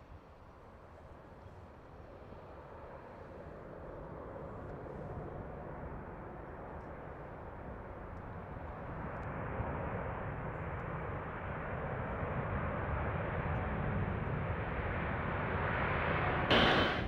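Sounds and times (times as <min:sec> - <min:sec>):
jet engines rushing: 0:16.5 - 0:17.0.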